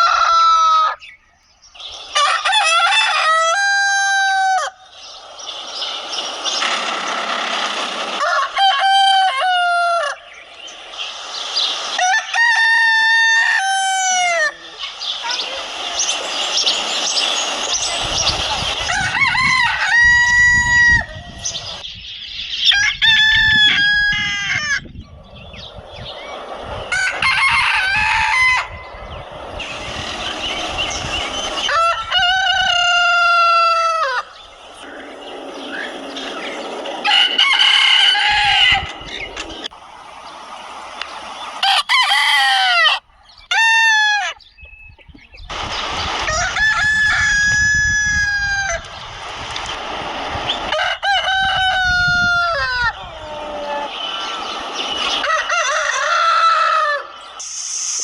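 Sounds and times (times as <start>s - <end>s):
hens clucking: 0.0s - 21.8s, 22.8s - 57.5s
roosters crowing: 0.0s - 21.8s, 22.6s - 58.0s
farmyard noise: 0.0s - 58.0s.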